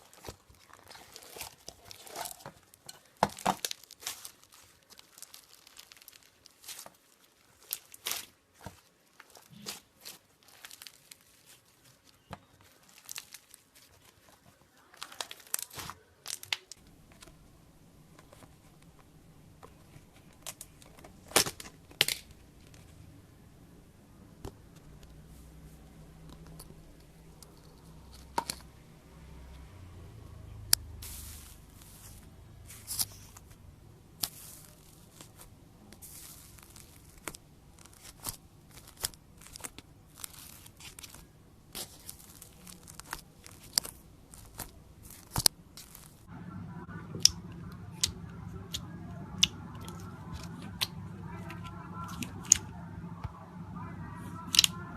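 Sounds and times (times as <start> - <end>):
slime crackling and tearing: 0.0 - 16.8, 20.3 - 22.9, 30.6 - 46.3, 54.5 - 54.8.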